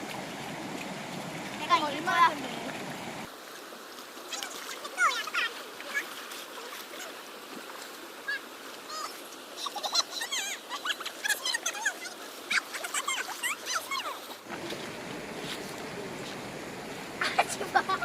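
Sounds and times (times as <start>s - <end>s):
mountain stream rushing: 0.0s - 18.0s
children squealing and shrieking: 8.3s - 14.2s.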